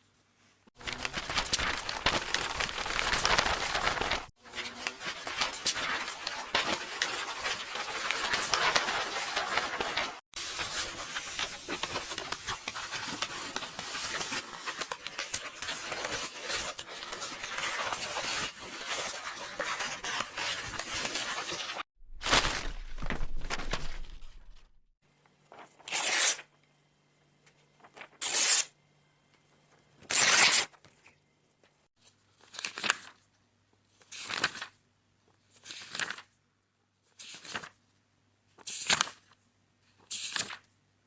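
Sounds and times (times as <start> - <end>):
paper rustling and crackling: 0.8 - 24.7, 35.5 - 36.3, 37.2 - 37.8.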